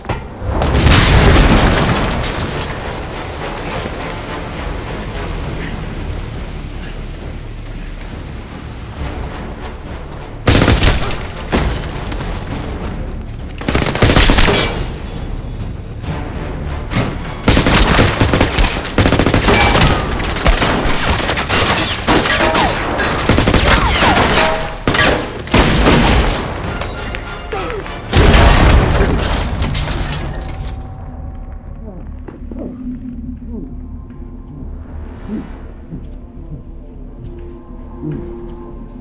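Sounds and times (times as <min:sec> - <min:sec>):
film music score: 0:00.0 - 0:39.0
gunfire: 0:10.5 - 0:11.9, 0:13.6 - 0:14.9, 0:17.5 - 0:22.6, 0:23.3 - 0:26.6.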